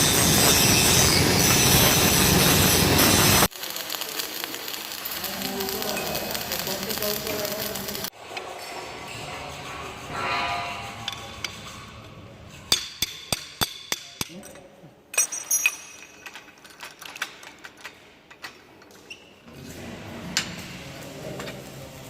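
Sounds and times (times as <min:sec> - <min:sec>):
hammer strikes: 0:12.6 - 0:14.5.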